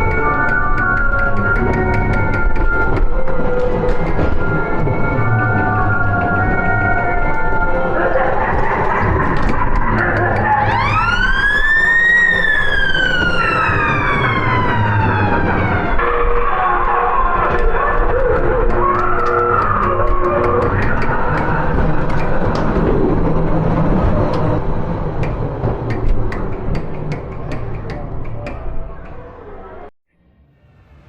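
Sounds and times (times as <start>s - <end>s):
fast clicking beat: 0.0s - 3.3s, 8.7s - 11.6s, 18.0s - 23.2s, 24.2s - 29.2s
siren winding up and down: 0.0s - 23.2s
steady din: 0.0s - 29.6s.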